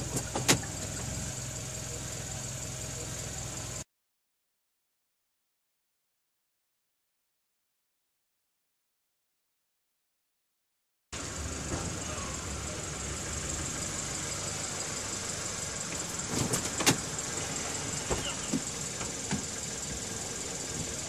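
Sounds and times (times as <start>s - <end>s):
car running noise: 0.0s - 3.8s, 11.2s - 21.0s
sharp clicks and clunks: 15.9s - 17.1s, 18.1s - 19.6s.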